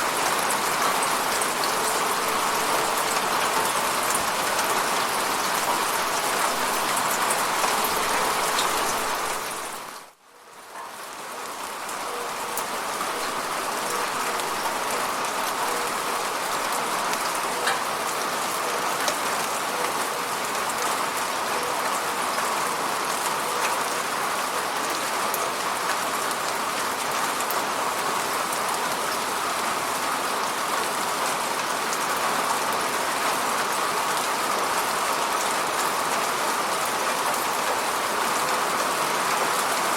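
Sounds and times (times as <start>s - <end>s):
rain hitting a window: 10.8s - 39.9s.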